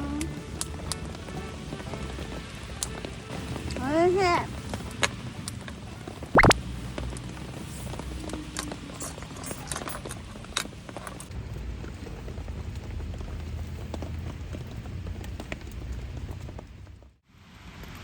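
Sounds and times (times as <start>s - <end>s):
rain pattering: 0.0s - 18.0s
drops ticking: 6.4s - 6.6s.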